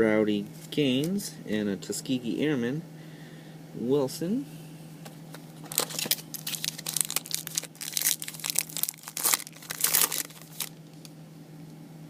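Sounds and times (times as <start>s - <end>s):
wrapper tearing and crinkling: 5.6s - 10.8s.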